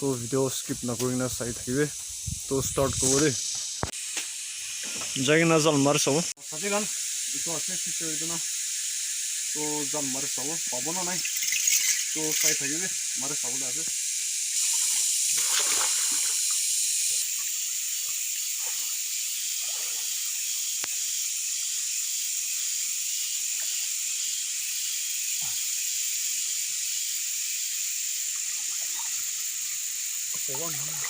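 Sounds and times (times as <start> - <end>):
steady high-pitched hiss: 0.0 - 31.0.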